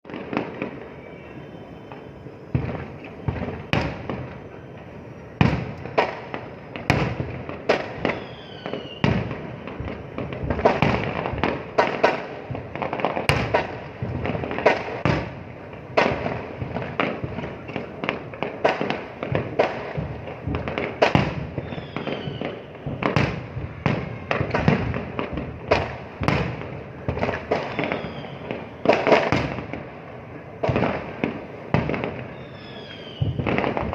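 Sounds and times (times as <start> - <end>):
fireworks bangs: 0.0 - 33.9
faint falling whistle: 0.4 - 5.5, 8.1 - 9.8, 21.6 - 23.0, 27.7 - 28.5, 32.3 - 33.4.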